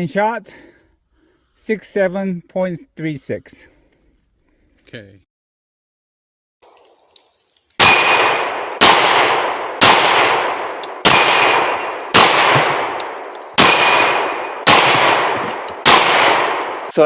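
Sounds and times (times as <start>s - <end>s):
steel targets ringing: 7.8s - 8.6s, 11.0s - 13.0s, 13.6s - 16.9s
pistol shots: 7.8s - 16.9s.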